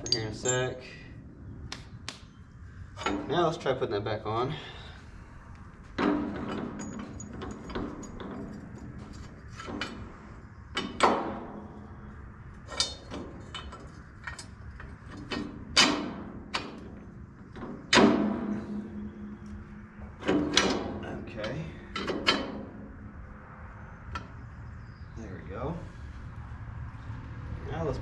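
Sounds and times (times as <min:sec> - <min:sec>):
heavy metal parts clanking: 0:00.0 - 0:01.0, 0:02.9 - 0:03.8, 0:05.8 - 0:24.6.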